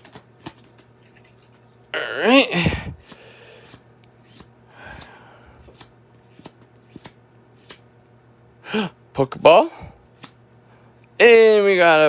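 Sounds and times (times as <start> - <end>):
cards clicking and tapping: 0.0 - 1.7, 3.0 - 7.8, 10.2 - 10.4
cards sliding rustle: 0.0 - 1.9, 2.9 - 7.9, 10.1 - 10.4.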